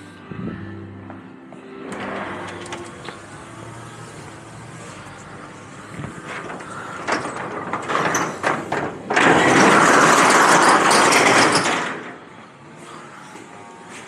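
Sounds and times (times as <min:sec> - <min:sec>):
rattling rush of ice: 0:06.4 - 0:12.1
ice and cans clattering: 0:07.1 - 0:12.1.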